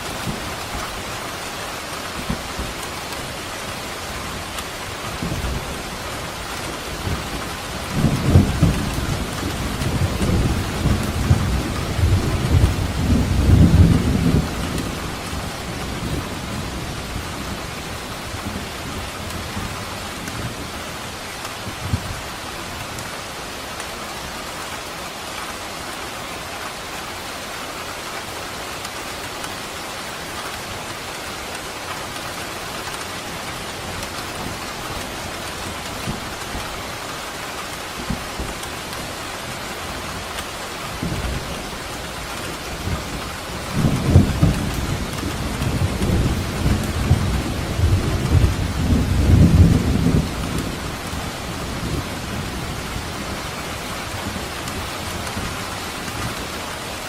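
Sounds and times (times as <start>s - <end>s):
steady rain: 0.0s - 57.0s
thunder rumbling: 5.0s - 20.6s, 40.8s - 56.6s.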